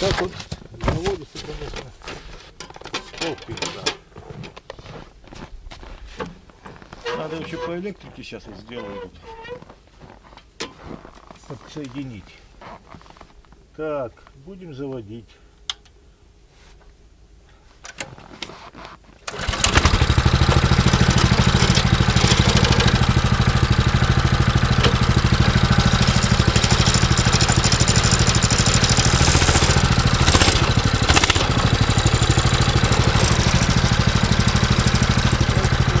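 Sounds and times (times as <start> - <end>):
small engine running: 19.3 - 36.0.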